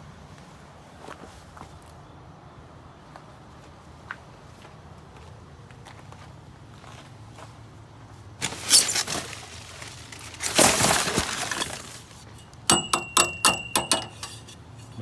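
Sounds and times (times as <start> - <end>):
scrap metal clattering: 8.4 - 15.0
metal striking metal clinks: 12.3 - 15.0.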